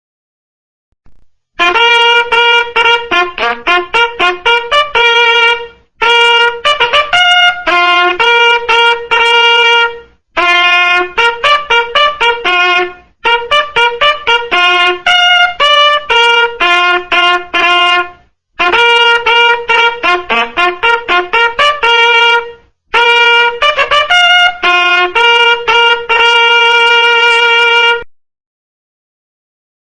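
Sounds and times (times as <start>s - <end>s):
bugle playing fast call: 1.6s - 28.1s.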